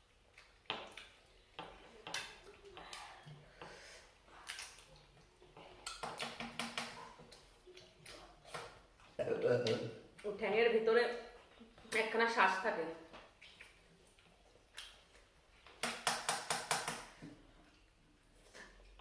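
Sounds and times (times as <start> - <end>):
person chewing: 0.0 - 3.4, 4.3 - 10.3, 13.2 - 15.8.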